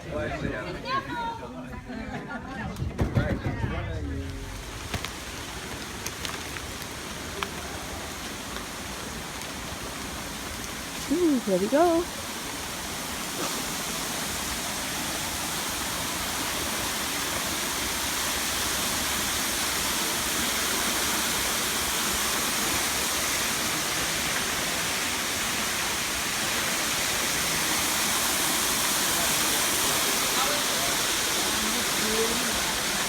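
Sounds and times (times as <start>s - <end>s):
low rumble: 3.5s - 7.5s.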